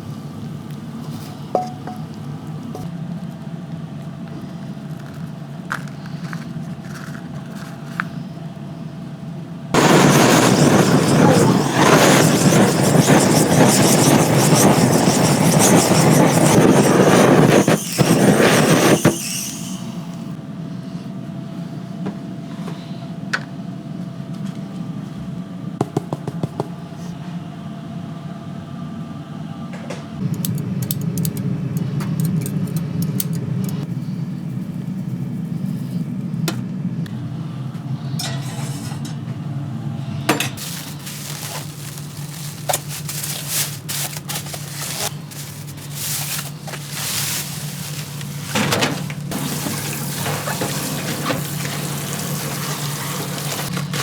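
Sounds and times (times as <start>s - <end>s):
steady low hum: 0.0s - 19.2s, 26.7s - 50.5s.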